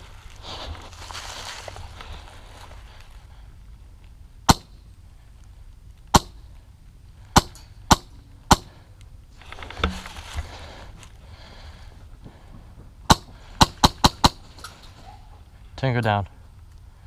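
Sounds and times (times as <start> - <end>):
airsoft rifle shots: 6.1 - 6.4, 7.3 - 8.8, 13.1 - 14.6.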